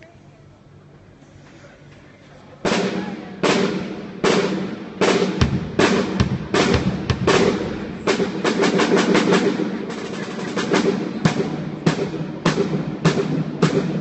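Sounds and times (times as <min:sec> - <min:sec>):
snare drum hits: 0:02.7 - 0:14.0
bass drum hits: 0:03.6 - 0:08.6.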